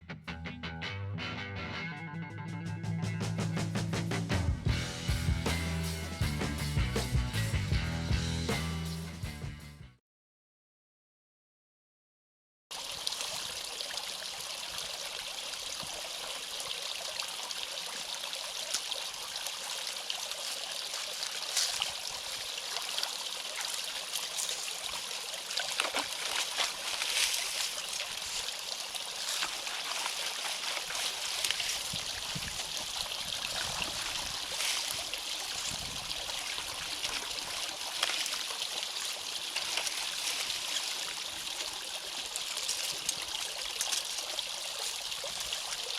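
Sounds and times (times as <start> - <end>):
water running and trickling: 12.7 - 45.9
short splashes or knocks: 25.6 - 28.5.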